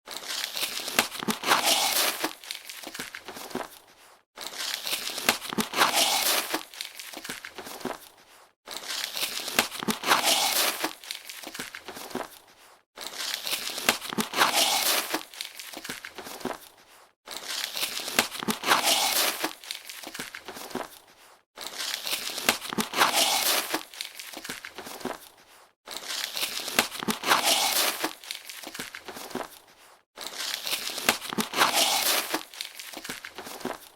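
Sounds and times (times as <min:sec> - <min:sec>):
cardboard crinkling and crackling: 0:00.0 - 0:33.9
tape tearing off cardboard box: 0:18.1 - 0:19.6, 0:22.4 - 0:23.9, 0:26.7 - 0:28.2, 0:30.8 - 0:32.5.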